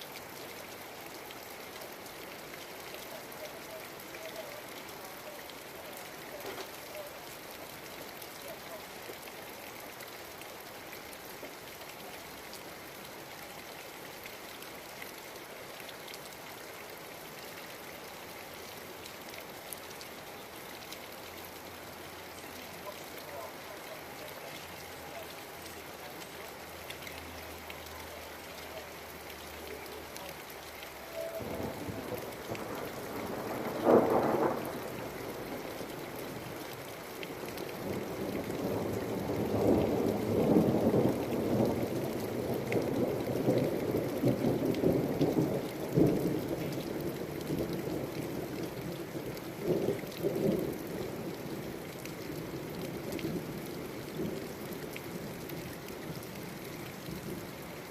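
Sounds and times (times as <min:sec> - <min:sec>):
steady rain: 0:00.0 - 0:57.9
thunder crack and rumble: 0:31.4 - 0:35.7.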